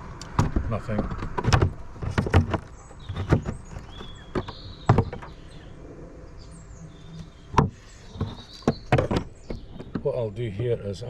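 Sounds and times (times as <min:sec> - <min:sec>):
wooden frames knocking and clicking: 0:00.2 - 0:05.5, 0:07.5 - 0:10.2
faint bird chirps: 0:02.8 - 0:10.3.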